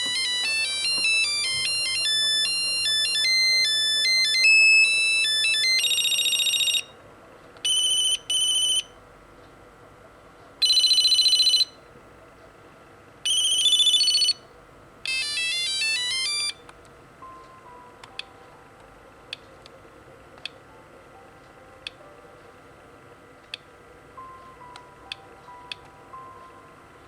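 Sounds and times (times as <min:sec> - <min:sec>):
phone ringtone beeping tunes: 0:00.0 - 0:06.9, 0:07.7 - 0:08.9, 0:10.6 - 0:11.8, 0:13.3 - 0:14.4, 0:15.1 - 0:16.6.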